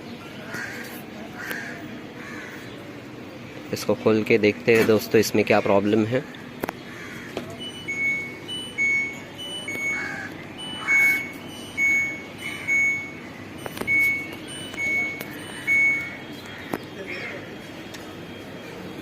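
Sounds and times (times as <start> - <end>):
low steady hum: 6.1 - 17.0
short high electronic beeps: 7.6 - 16.4.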